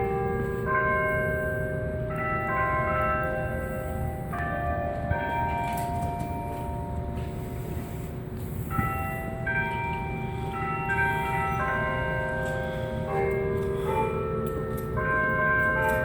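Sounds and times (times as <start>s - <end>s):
tower bells chiming: 0.0s - 16.0s.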